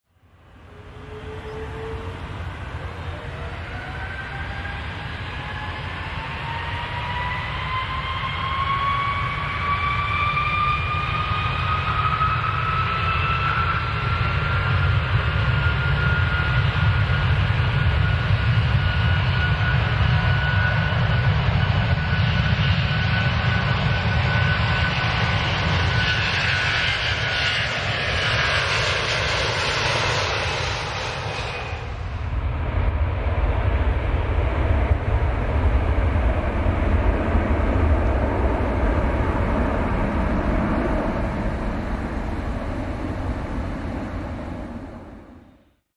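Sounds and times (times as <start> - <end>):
airplane engines whining: 0.1 - 45.9
deep rumble: 26.8 - 45.4.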